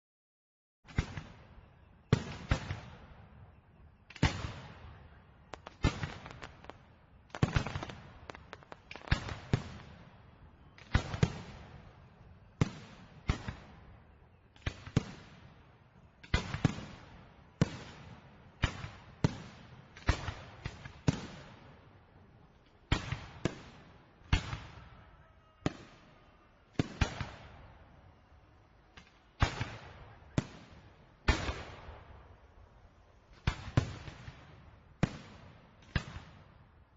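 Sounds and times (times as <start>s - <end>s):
fireworks exploding: 4.1s - 14.0s, 14.6s - 21.8s, 29.0s - 36.6s.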